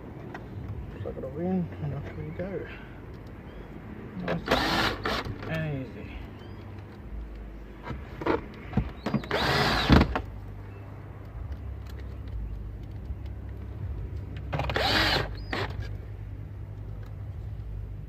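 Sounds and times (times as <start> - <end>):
cordless drill whirring: 4.5 - 5.2, 9.3 - 10.0, 14.6 - 15.7.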